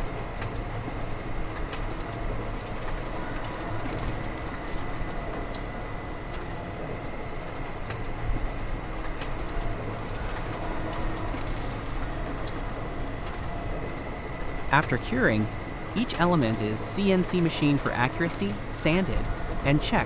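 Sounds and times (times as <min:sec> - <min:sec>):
factory machinery noise: 0:14.7 - 0:20.0.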